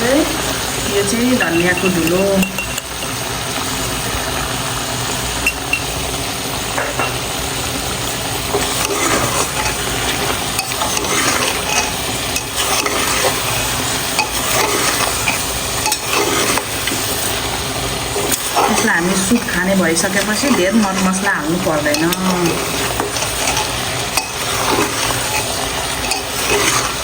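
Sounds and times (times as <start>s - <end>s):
meat sizzling in a pan: 0.0s - 27.0s
spoon clinking and scraping pan: 1.4s - 3.3s, 5.4s - 5.9s, 8.5s - 17.5s, 18.1s - 27.0s.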